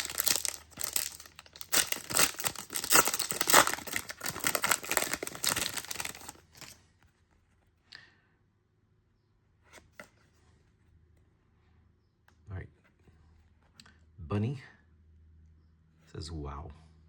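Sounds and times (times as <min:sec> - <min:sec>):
foil wrapper tearing and crinkling: 0:00.0 - 0:06.8.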